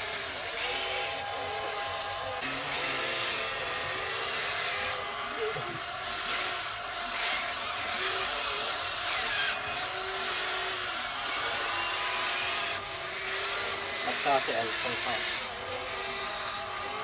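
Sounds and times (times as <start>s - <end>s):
small electric motors whirring: 0.0s - 17.0s.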